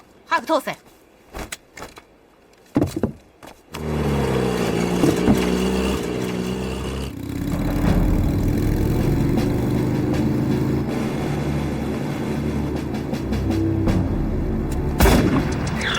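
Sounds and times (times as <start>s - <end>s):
vehicle engine running: 3.8s - 15.9s.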